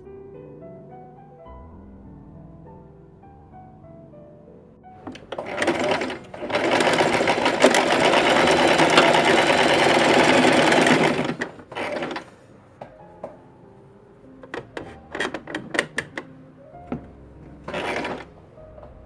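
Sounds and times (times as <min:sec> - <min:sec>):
sewing machine stitching: 0:05.1 - 0:12.3, 0:17.6 - 0:18.3.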